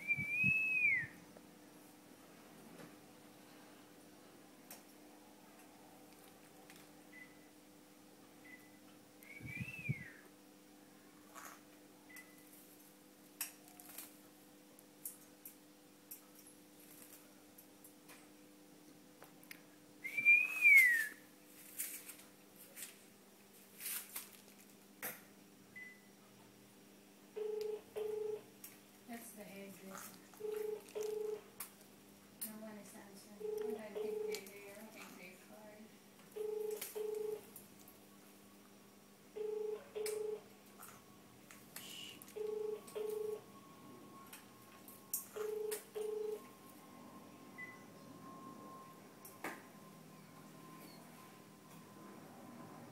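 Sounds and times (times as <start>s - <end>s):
telephone ringback tone: 27.4s - 28.4s, 30.4s - 31.4s, 33.4s - 34.4s, 36.4s - 37.5s, 39.4s - 40.4s, 42.4s - 43.5s, 45.3s - 46.6s
faint bird chirp: 50.1s - 51.4s.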